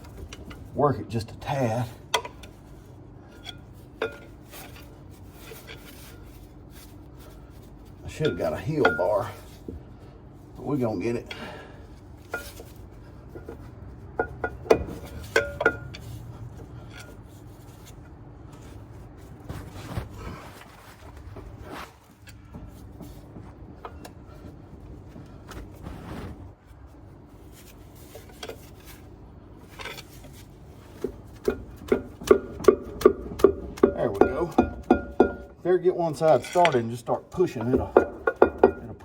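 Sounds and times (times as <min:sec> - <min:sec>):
metal knocks and clanks: 0:31.4 - 0:35.6, 0:36.2 - 0:39.0.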